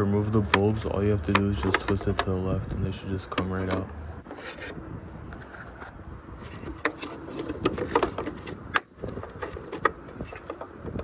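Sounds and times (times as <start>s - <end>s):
plastic clicks and knocks: 0.4s - 2.4s, 6.6s - 11.0s.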